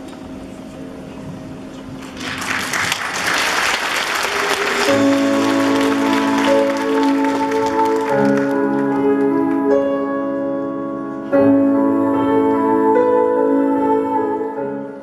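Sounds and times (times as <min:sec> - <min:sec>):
applause: 0:02.0 - 0:09.7
slow instrumental chords: 0:04.8 - 0:15.0.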